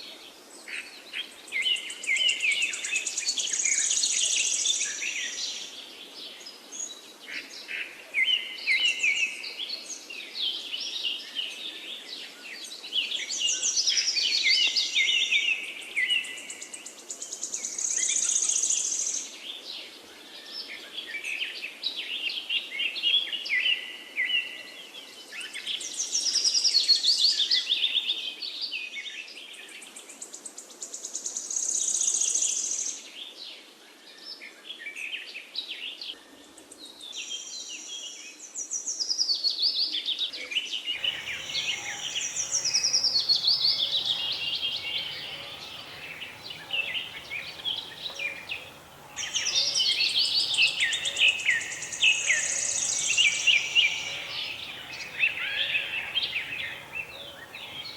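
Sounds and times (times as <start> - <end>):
songbirds singing: 41.0 - 57.9.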